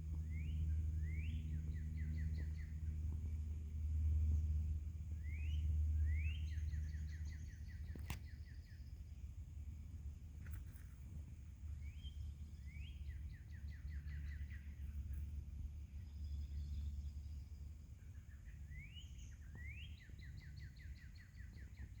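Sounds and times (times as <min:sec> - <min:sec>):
songbird singing: 0:00.0 - 0:22.0
steady low rumble: 0:00.0 - 0:22.0.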